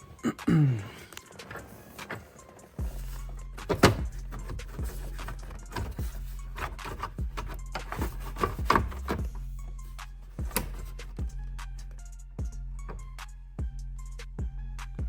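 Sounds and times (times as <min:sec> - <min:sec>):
plastic trim clicking and knocking: 0:01.1 - 0:09.4, 0:10.4 - 0:11.3.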